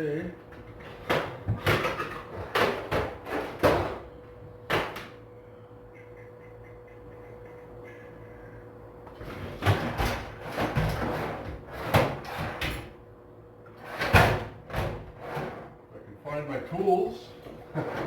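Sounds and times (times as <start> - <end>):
faint steady hum: 0.0 - 12.0
drawers opening and shutting: 9.2 - 12.9, 13.8 - 15.8, 17.4 - 18.0.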